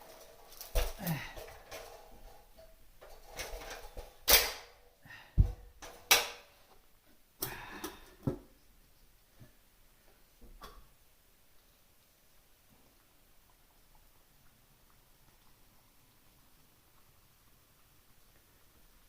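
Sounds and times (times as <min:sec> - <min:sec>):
cooking gear knocking and clattering: 0:00.0 - 0:04.8, 0:05.4 - 0:06.5.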